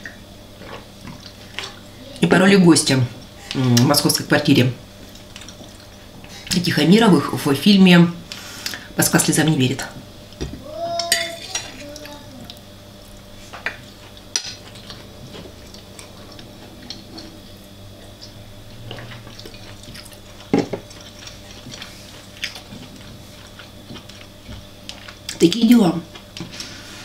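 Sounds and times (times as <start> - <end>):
utensils clinking against dish: 11.0 - 11.8.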